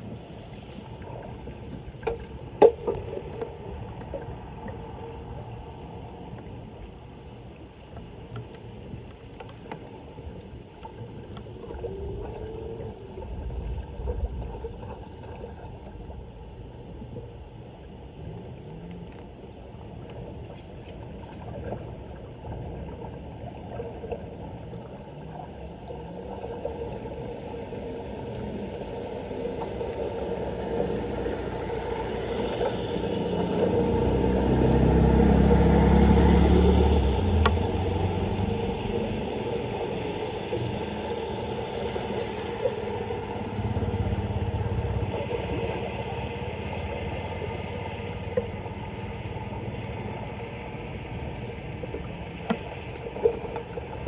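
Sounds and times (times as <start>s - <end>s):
low rumble: 0.0s - 54.0s
floodwater pouring into drain: 26.3s - 51.1s.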